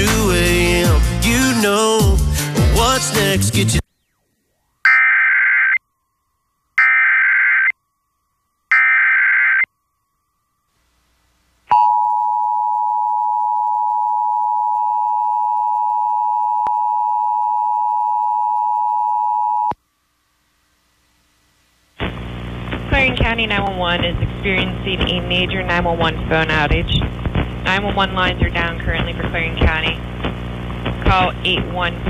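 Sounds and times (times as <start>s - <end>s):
buzzy digital data tones: 4.2s - 5.8s, 6.8s - 7.8s.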